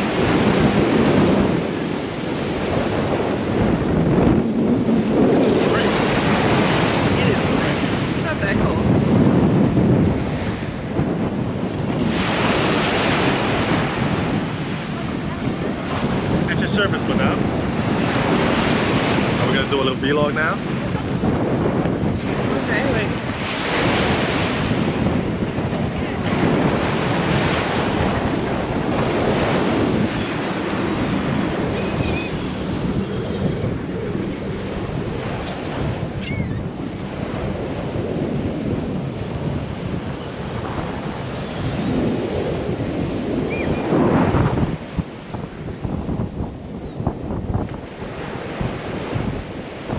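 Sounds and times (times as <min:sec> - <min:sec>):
sea surf breaking on shore: 0:00.0 - 0:49.9
wind buffeting microphone: 0:00.0 - 0:49.9.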